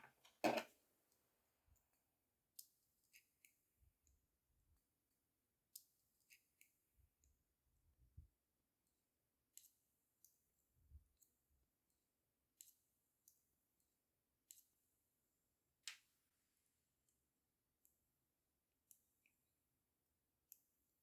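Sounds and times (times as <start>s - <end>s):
small sharp clicks and taps: 8.8s - 11.4s, 12.6s - 13.5s, 14.4s - 14.8s.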